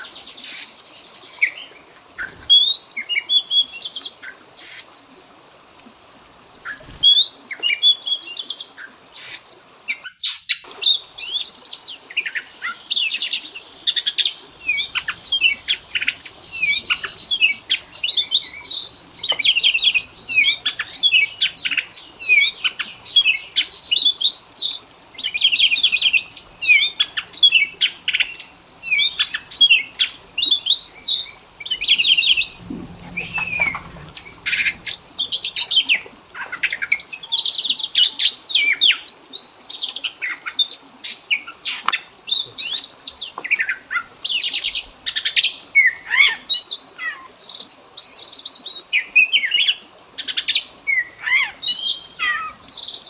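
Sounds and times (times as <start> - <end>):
bird singing varied song: 6.1 - 44.6.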